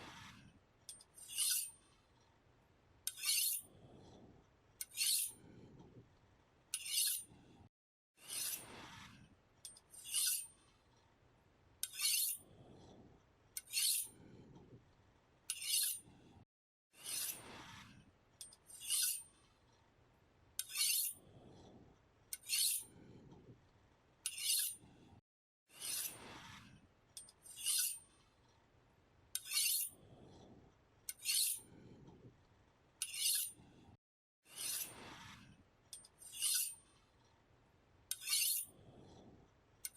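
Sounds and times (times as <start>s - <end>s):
knife blade scraping on sharpener: 0.9s - 1.8s, 3.1s - 3.7s, 4.8s - 5.4s, 6.7s - 7.3s, 8.2s - 8.7s, 9.7s - 10.5s, 11.8s - 12.4s, 13.6s - 14.2s, 15.5s - 16.0s, 18.4s - 19.3s, 20.6s - 21.2s, 22.3s - 22.9s, 24.2s - 24.8s, 25.8s - 26.2s, 27.2s - 28.0s, 29.4s - 30.0s, 31.1s - 31.7s, 33.0s - 33.6s, 34.5s - 35.0s, 36.0s - 36.8s, 38.1s - 38.7s.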